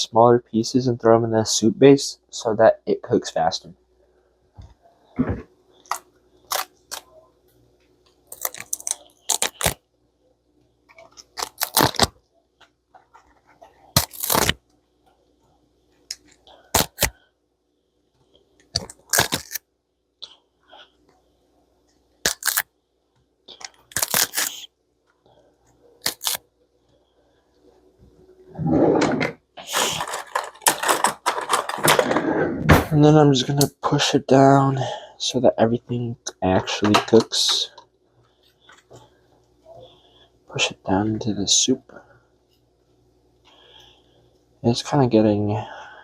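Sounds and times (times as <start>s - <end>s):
cabbage leaves tearing: 8.3s - 9.8s, 11.3s - 12.1s, 13.9s - 14.6s, 16.8s - 17.1s, 18.8s - 19.6s, 22.2s - 22.6s, 23.8s - 24.7s, 26.0s - 26.4s.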